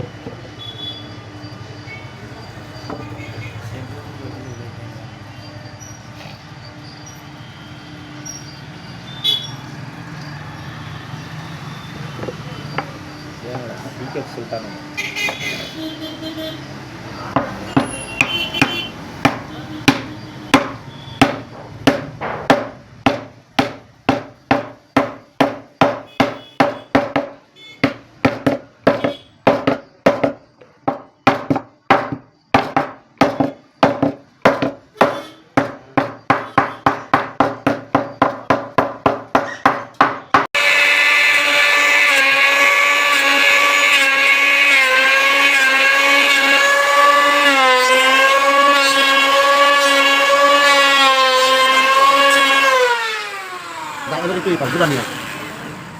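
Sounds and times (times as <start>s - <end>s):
mallet blows on chisel: 17.4s - 38.7s
loud machine hum: 40.6s - 55.9s.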